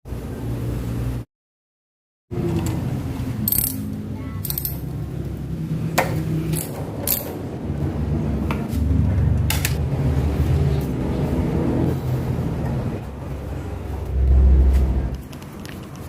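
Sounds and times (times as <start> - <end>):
metallic tool clicks and clinks: 3.4 - 5.0, 6.5 - 7.4
low steady drone: 9.1 - 15.2.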